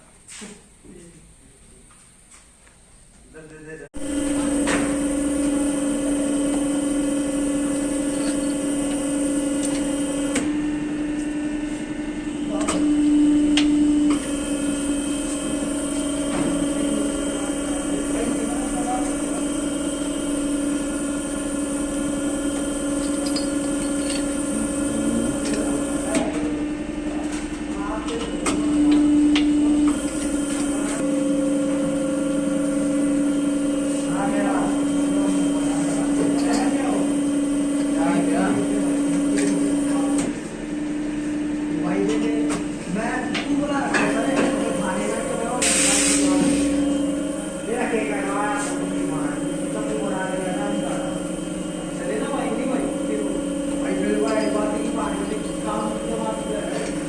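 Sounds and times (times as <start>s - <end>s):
machine electric hum: 0.0s - 57.0s
hiss: 45.6s - 46.3s.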